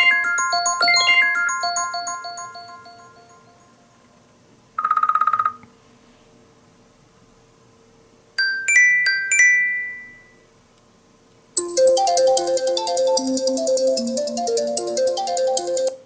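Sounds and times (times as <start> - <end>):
ringtone melody: 0.0 - 3.8, 8.4 - 10.4, 11.6 - 16.0
bell-like chime: 0.0 - 3.9, 8.4 - 10.4.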